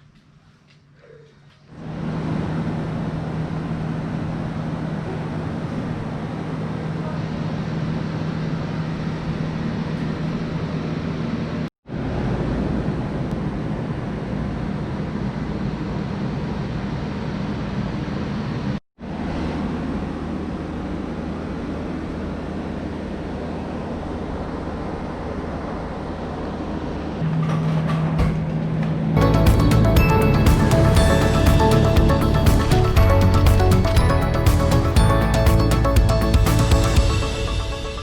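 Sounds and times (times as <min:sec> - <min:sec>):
low hum: 0:29.1 - 0:38.0
vehicle running noise: 0:29.2 - 0:38.0.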